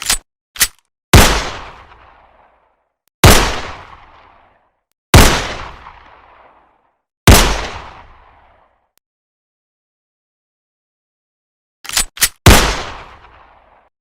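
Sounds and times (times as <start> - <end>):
pistol shots with echo: 1.2 - 2.4, 3.2 - 4.4, 5.2 - 6.6, 7.3 - 8.6, 12.5 - 13.8
pistol metallic click: 11.9 - 12.4.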